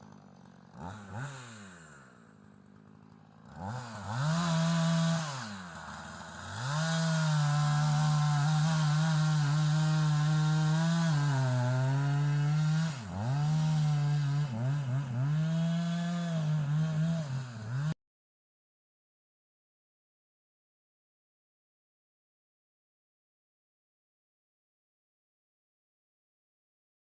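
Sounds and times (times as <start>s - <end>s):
chainsaw revving: 0.0s - 18.0s.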